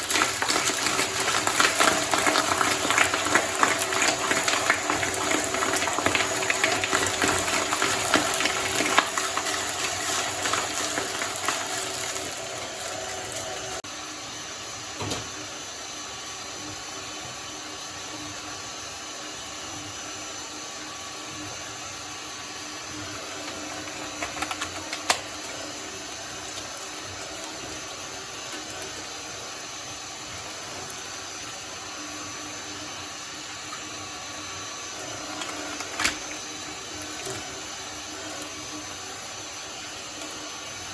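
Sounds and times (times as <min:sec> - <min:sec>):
shredder crunching slime: 0:00.0 - 0:13.8, 0:22.4 - 0:40.9.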